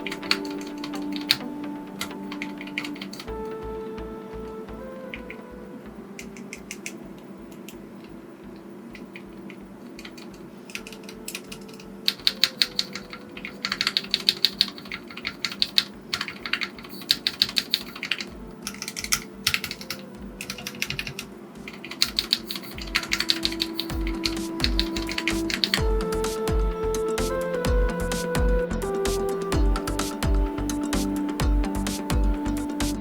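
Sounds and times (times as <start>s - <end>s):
typing on mechanical keyboard: 10.0s - 25.8s.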